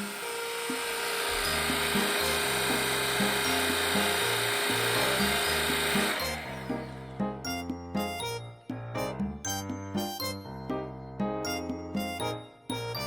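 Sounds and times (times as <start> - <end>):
stick vacuum whining: 0.0 - 6.9
background music: 0.0 - 13.0.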